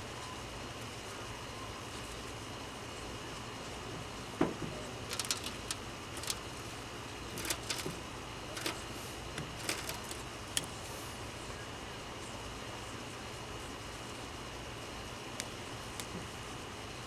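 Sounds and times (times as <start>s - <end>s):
metallic clicks and clinks: 5.1s - 6.5s, 7.4s - 8.0s, 8.6s - 10.7s.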